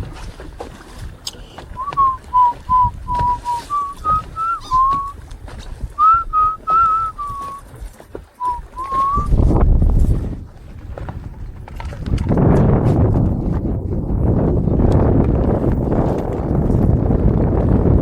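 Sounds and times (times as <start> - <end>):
boat noise: 0.0 - 18.0
low rumble of wind: 0.0 - 18.0
person whistling a tune: 1.8 - 5.2, 6.0 - 7.6, 8.4 - 9.4.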